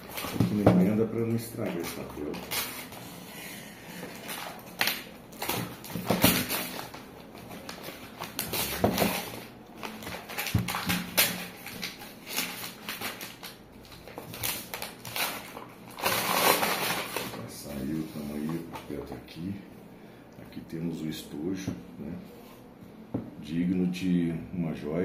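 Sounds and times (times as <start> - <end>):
paper rustling and crinkling: 0.0 - 3.3, 3.9 - 19.2.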